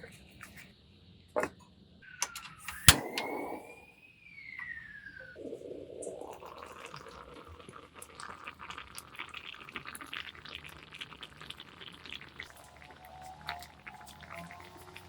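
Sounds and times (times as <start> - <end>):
pan contents bubbling: 2.2 - 3.8, 5.4 - 15.0
liquid poured into pan: 5.9 - 15.0.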